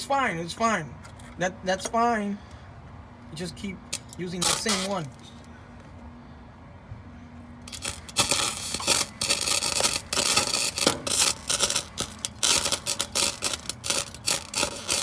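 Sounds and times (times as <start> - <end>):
welding arc crackling: 4.0 - 5.2, 7.6 - 15.0.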